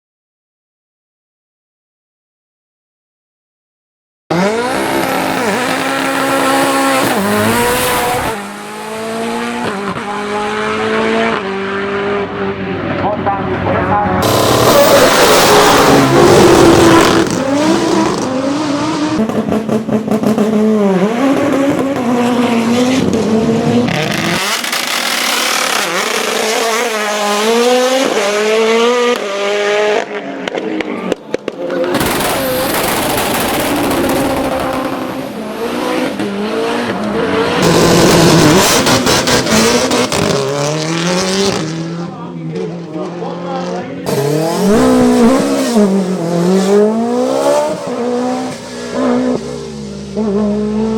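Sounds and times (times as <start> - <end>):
race car engine at full throttle: 4.3 - 50.9.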